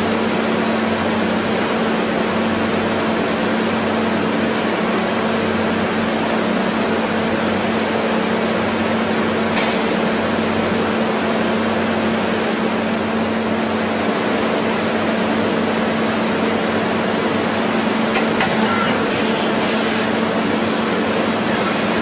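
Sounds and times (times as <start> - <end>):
machine hum: 6.8 - 22.0
machine tool hissing: 18.9 - 20.4.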